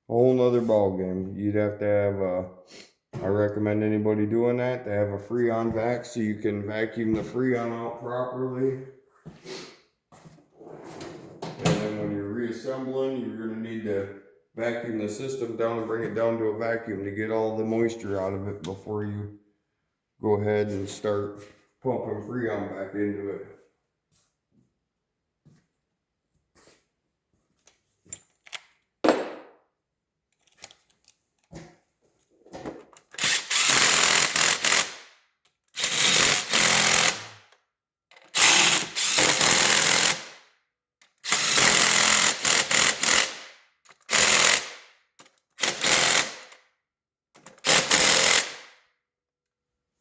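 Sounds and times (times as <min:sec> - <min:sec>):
parts knocking and clicking: 0:27.6 - 0:29.6, 0:30.3 - 0:31.8, 0:32.5 - 0:40.3, 0:43.9 - 0:46.6, 0:47.4 - 0:48.5
impact wrench hammering: 0:33.2 - 0:35.0, 0:35.8 - 0:37.3, 0:38.4 - 0:40.4, 0:41.3 - 0:43.4, 0:44.1 - 0:44.8, 0:45.6 - 0:46.5, 0:47.5 - 0:48.6.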